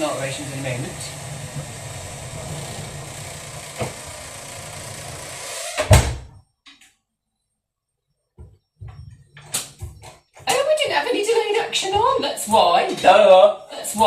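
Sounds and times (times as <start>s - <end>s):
steady hum: 0.0s - 6.4s
door slamming shut: 2.3s - 6.3s.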